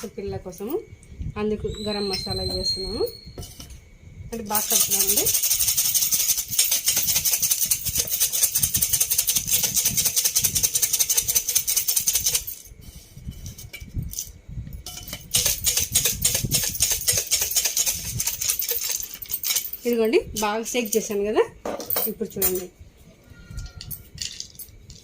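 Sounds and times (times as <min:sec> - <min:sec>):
snacks rattling in a shaken box: 0:04.6 - 0:12.6, 0:15.3 - 0:19.6.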